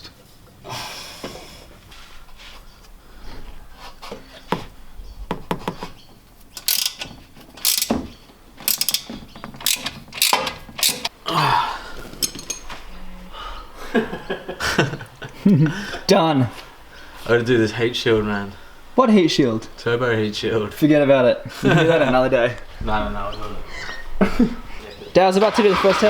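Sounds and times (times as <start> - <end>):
metallic clicks and knocks: 6.5 - 11.1, 12.2 - 12.8
ratchet wrench clicking: 6.6 - 8.0, 8.6 - 11.1.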